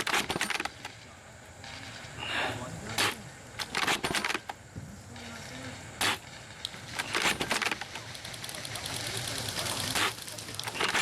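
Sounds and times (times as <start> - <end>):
airsoft gun bursts: 6.0 - 11.0.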